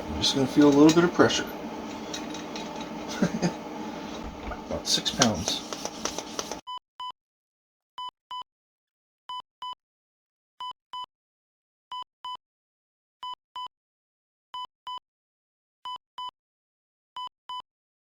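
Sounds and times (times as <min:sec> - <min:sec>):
heart monitor beeps: 0:08.0 - 0:08.5, 0:09.3 - 0:09.8, 0:10.6 - 0:11.1, 0:13.2 - 0:13.7, 0:14.6 - 0:15.0, 0:15.9 - 0:16.3, 0:17.2 - 0:17.6.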